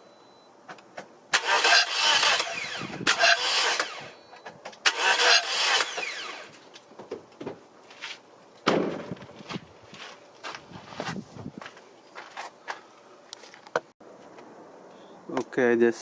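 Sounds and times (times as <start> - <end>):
engine cranking on starter: 1.3 - 4.2, 4.8 - 6.6.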